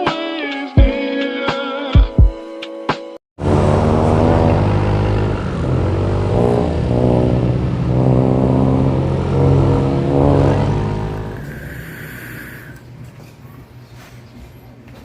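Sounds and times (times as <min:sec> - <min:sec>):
vehicle engine revving: 0:03.4 - 0:12.8.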